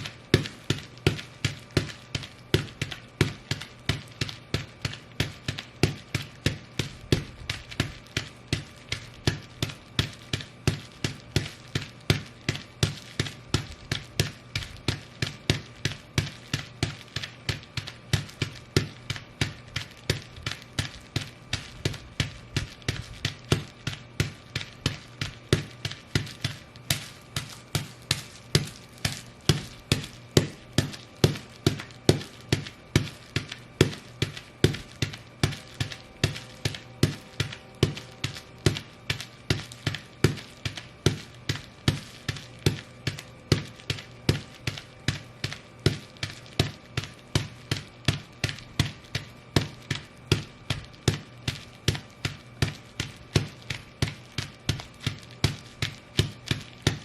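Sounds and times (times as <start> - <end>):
boots stomping on bubble wrap: 0.0 - 57.0.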